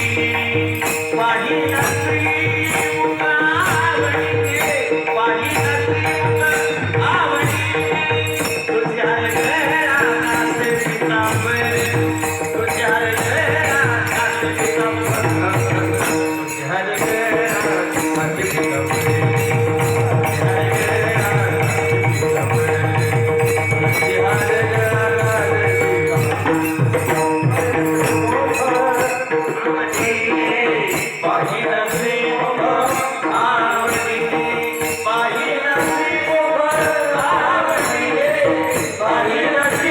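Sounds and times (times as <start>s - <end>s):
jingling cymbals: 0.0s - 39.9s
drum beat: 5.5s - 29.2s.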